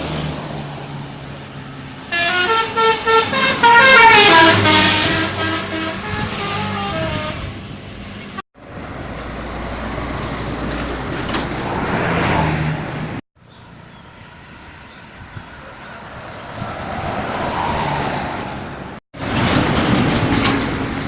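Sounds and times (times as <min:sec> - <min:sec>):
bus engine and road noise: 0:00.0 - 0:21.0
traffic noise: 0:00.0 - 0:21.0
bus horn melody: 0:02.1 - 0:07.7.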